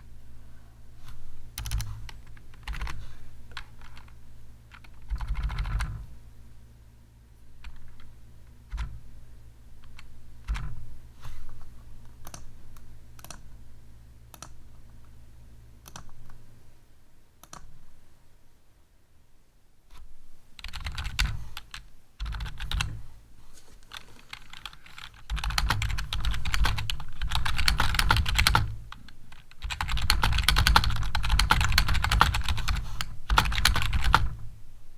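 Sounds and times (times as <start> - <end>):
low steady hum: 0.0 - 34.9
typing on computer keyboard: 1.6 - 6.0, 8.7 - 9.0, 12.2 - 12.5, 13.2 - 13.5, 15.8 - 16.4, 20.6 - 23.0, 23.9 - 34.4.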